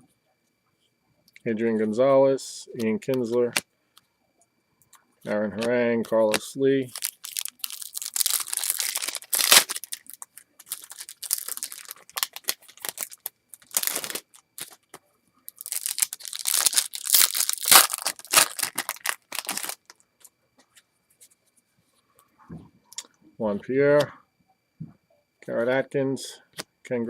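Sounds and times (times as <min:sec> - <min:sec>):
cards rustling: 0:05.6 - 0:19.9
foil wrapper tearing and crinkling: 0:06.3 - 0:14.8, 0:15.5 - 0:19.9.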